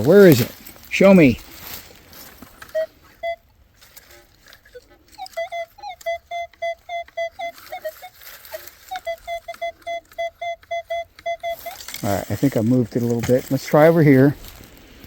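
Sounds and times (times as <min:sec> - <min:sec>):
metal detector short beeps: 0:02.7 - 0:03.5, 0:05.1 - 0:12.6.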